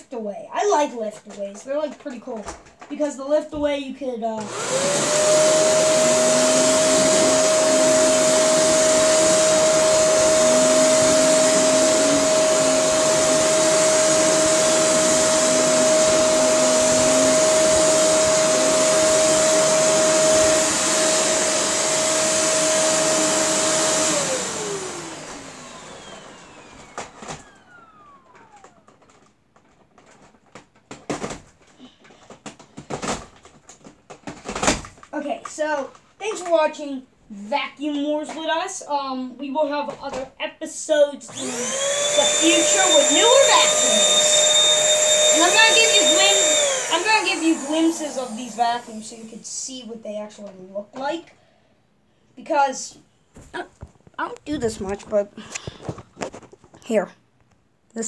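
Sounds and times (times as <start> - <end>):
motor winding down: 4.4 - 28.8, 41.3 - 48.9
vacuum cleaner running: 4.4 - 29.3, 41.2 - 49.8.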